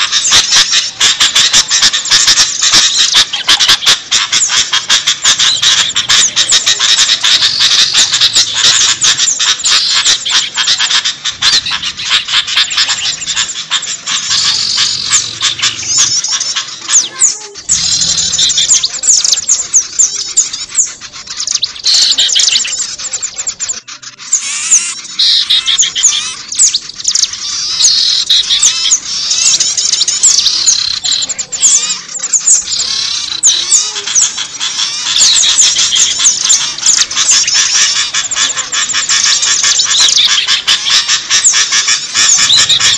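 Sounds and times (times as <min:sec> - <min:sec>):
songbirds chirping chorus: 0:00.0 - 0:42.9.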